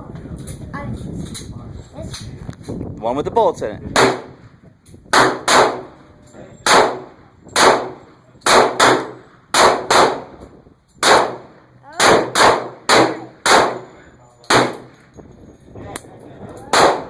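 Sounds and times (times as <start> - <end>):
handgun shots: 4.0 - 4.4, 5.1 - 5.9, 6.6 - 10.3, 11.0 - 13.9, 14.5 - 15.0, 16.7 - 17.0.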